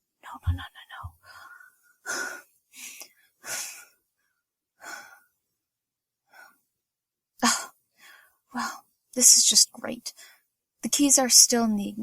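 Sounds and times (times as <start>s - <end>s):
woman breathing hard and gasping: 1.2s - 4.1s, 4.8s - 5.4s.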